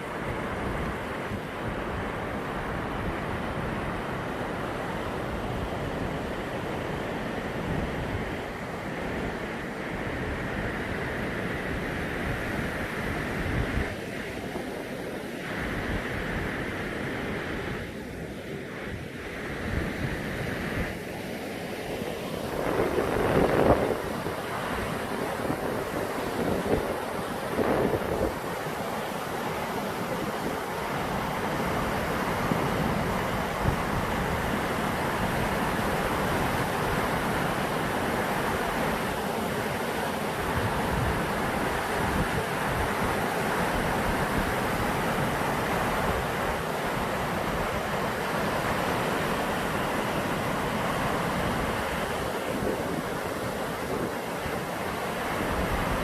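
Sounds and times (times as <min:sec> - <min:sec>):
waterfall rushing: 0:21.4 - 0:56.0
wind buffeting microphone: 0:22.4 - 0:28.9.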